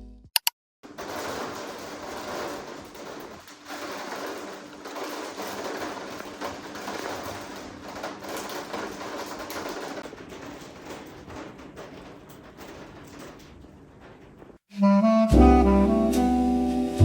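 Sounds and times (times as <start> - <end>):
steady rain falling: 0.9 - 14.2.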